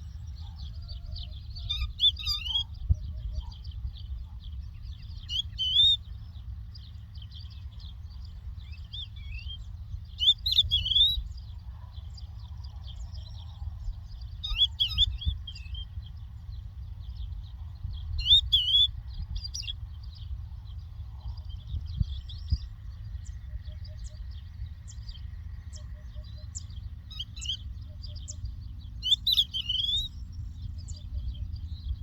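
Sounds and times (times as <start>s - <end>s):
lark singing: 0.0s - 16.2s, 17.2s - 20.3s, 20.9s - 32.0s
low rumble: 30.1s - 32.0s.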